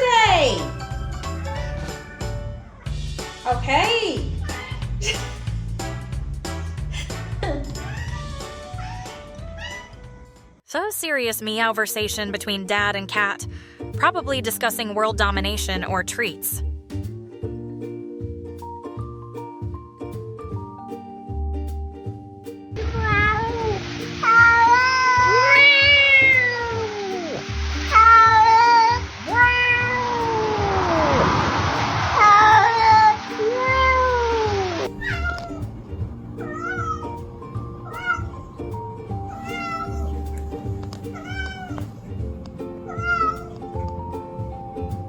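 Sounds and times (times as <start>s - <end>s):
background music with beat: 0.7s - 10.5s, 16.8s - 24.8s, 41.8s - 45.0s
cat meowing: 7.8s - 10.0s, 22.8s - 31.2s, 32.2s - 35.6s, 36.4s - 37.2s, 37.8s - 38.5s, 39.2s - 40.4s, 41.1s - 41.9s, 42.8s - 43.6s.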